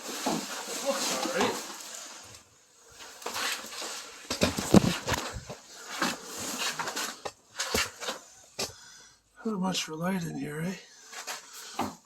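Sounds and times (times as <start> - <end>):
fabric rustling: 0.0 - 8.4.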